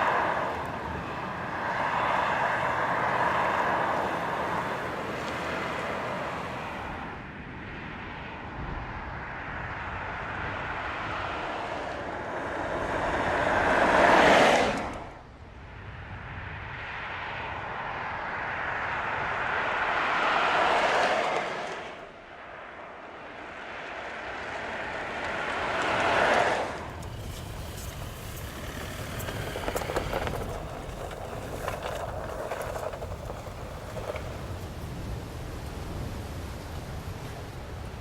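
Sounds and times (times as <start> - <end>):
car driving by: 0.0 - 36.5.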